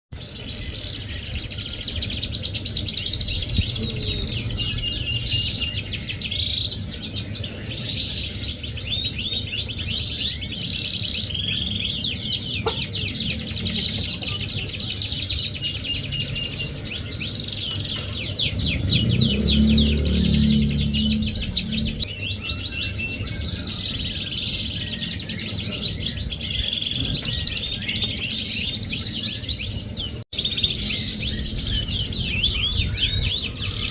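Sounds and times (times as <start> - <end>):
canary singing trills: 0.1 - 33.9
low rumbling: 0.4 - 8.5, 15.6 - 33.9.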